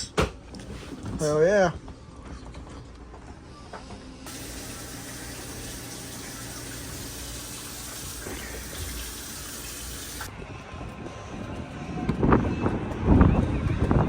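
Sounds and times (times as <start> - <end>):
running water rushing: 4.3 - 10.3.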